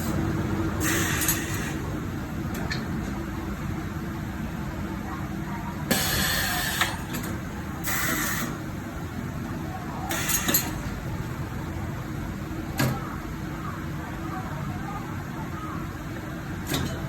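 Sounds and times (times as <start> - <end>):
compressed air hissing: 0.8 - 1.8.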